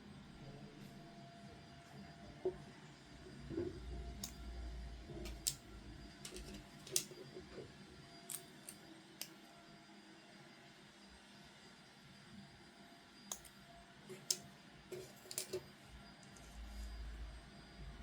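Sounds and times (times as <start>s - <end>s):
plastic toy pieces rubbing: 6.3s - 7.1s.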